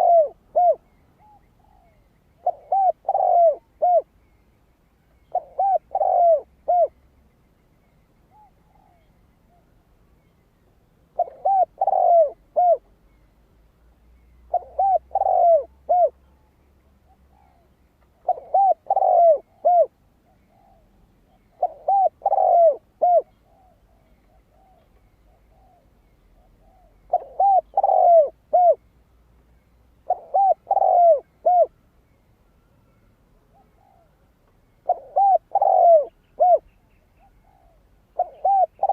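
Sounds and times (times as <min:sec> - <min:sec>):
dove cooing: 0:00.0 - 0:04.1, 0:05.2 - 0:07.0, 0:08.3 - 0:09.8, 0:11.1 - 0:12.9, 0:14.5 - 0:16.4, 0:17.0 - 0:28.8, 0:30.0 - 0:31.8, 0:33.5 - 0:34.2, 0:34.8 - 0:38.9.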